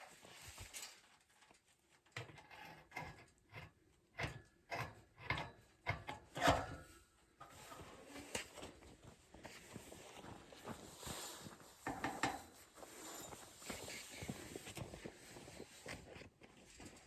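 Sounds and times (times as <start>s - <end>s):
handling knocks and scrapes: 4.7s - 17.0s.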